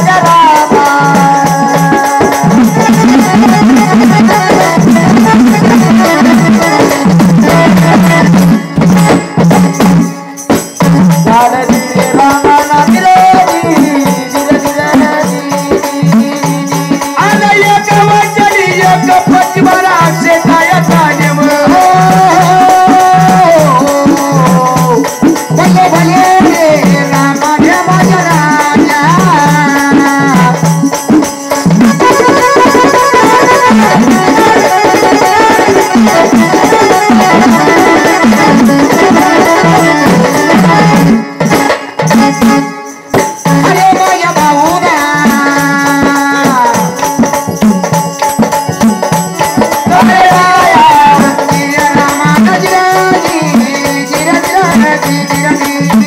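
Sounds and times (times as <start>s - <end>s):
drum beat: 0.0s - 56.0s
sliding melody line: 31.8s - 46.2s.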